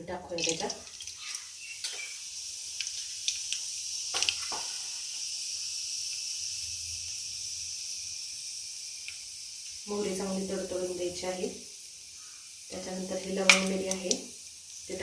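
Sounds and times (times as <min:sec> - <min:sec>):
seeds sizzling in hot oil: 0:00.0 - 0:15.0
pops and crackles: 0:00.4 - 0:02.2, 0:02.8 - 0:04.8, 0:13.4 - 0:14.2.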